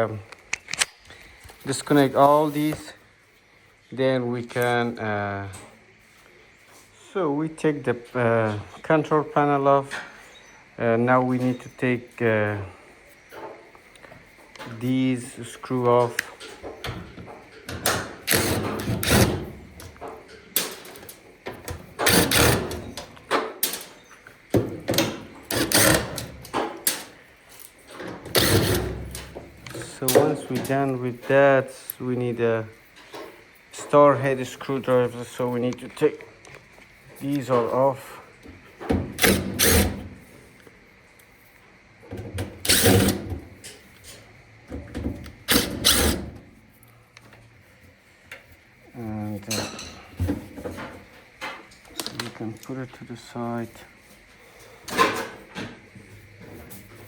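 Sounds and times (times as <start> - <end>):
cordless drill whirring: 18.3 - 19.3, 22.0 - 22.9, 25.5 - 26.3, 28.3 - 28.9, 39.2 - 40.0, 42.6 - 43.2, 45.4 - 46.2.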